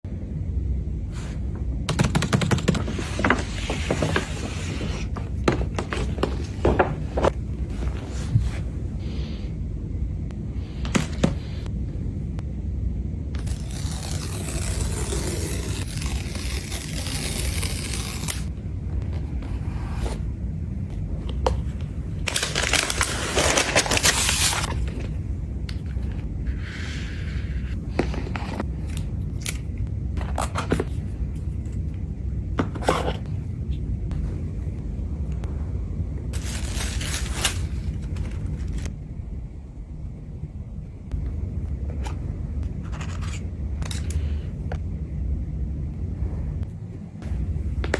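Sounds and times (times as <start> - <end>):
steady low rumble: 0.0 - 47.9
wrapping crinkling and tearing: 22.2 - 24.7, 36.4 - 38.9
packaging rustling: 22.2 - 25.2, 36.4 - 38.9.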